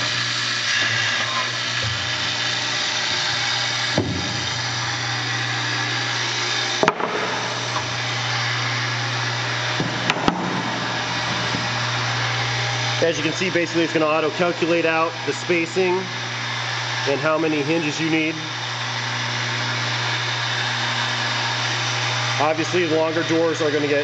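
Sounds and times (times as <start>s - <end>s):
boring head whirring: 0.0s - 24.0s
machine steady hum: 0.0s - 24.0s
sharp machine knocks: 3.9s - 4.5s, 6.8s - 7.6s, 9.8s - 11.7s.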